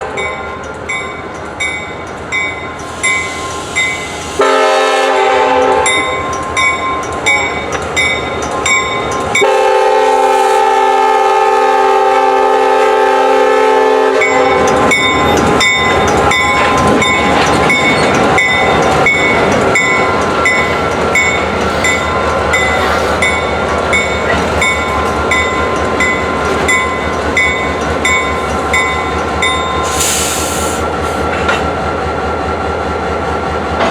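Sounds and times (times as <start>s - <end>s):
crossing bell ringing: 0.0s - 10.0s, 14.1s - 30.1s
locomotive air horn blasts: 2.9s - 6.2s, 9.4s - 14.7s
train wheels clacking over rail joints: 14.2s - 31.8s.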